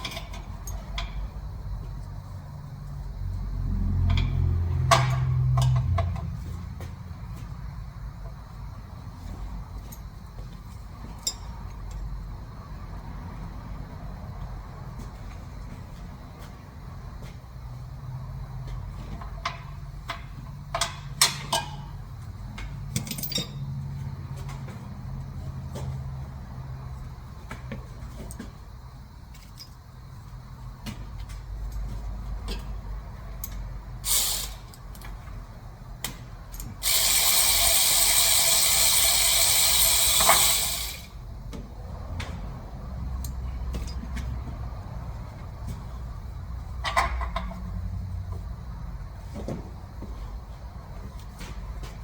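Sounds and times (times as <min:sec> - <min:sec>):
loud steady hiss: 0:34.0 - 0:34.8, 0:36.8 - 0:41.2.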